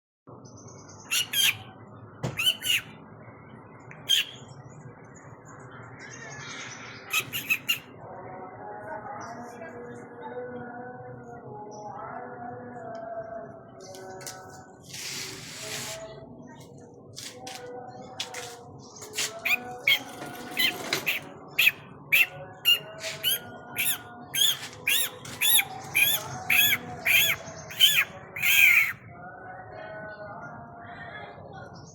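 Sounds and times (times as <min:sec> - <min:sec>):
sharp bird squawks: 0:01.1 - 0:01.6, 0:02.4 - 0:02.9, 0:04.1 - 0:04.4, 0:07.1 - 0:07.9, 0:19.4 - 0:29.0
faint bird chirping: 0:02.4 - 0:04.6, 0:05.2 - 0:08.0, 0:18.9 - 0:29.0.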